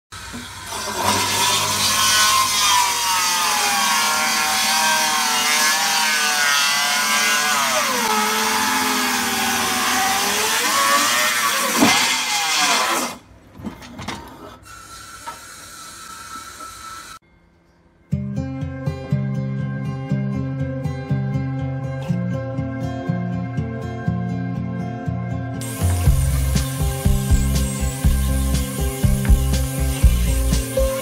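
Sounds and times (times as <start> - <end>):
power tool cutting wood: 0.1 - 13.2, 14.6 - 17.2, 25.6 - 31.0.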